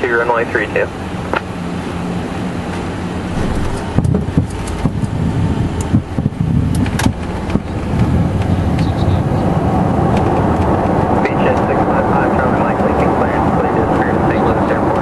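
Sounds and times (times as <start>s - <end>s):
jet engine and airflow rumble: 0.0s - 15.0s
wheels knocking and rattling on runway: 2.7s - 11.8s.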